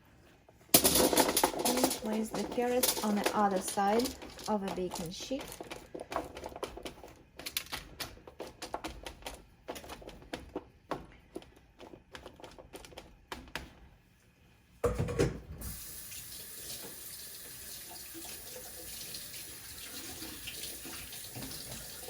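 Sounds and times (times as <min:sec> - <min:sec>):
kitchen tap running: 0:00.8 - 0:11.0, 0:14.8 - 0:22.0.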